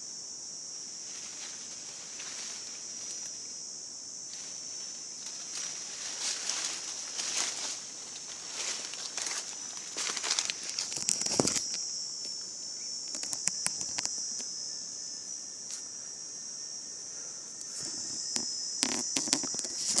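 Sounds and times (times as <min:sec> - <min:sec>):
high-pitched insect chorus: 0:00.0 - 0:20.0
sharp crackles and clicks: 0:10.1 - 0:11.8, 0:13.0 - 0:14.5, 0:18.2 - 0:20.0.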